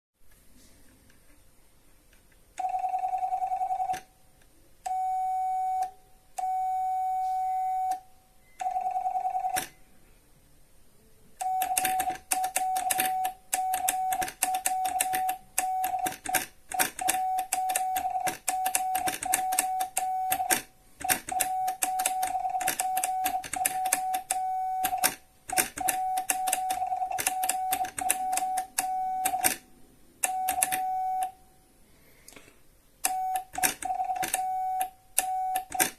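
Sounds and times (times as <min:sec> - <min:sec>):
morse code beeps: 0:04.9 - 0:09.8, 0:11.4 - 0:29.6, 0:30.2 - 0:31.4, 0:33.1 - 0:35.9
telegraph key clicks: 0:33.0 - 0:35.9.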